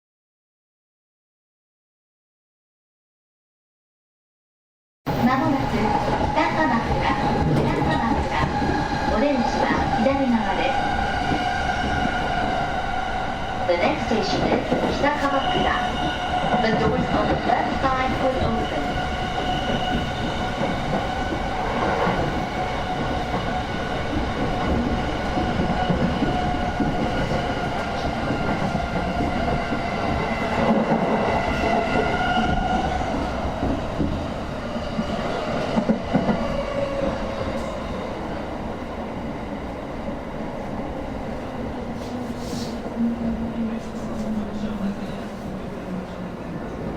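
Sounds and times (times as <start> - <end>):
train wheels rumbling on rails: 5.1 - 46.9.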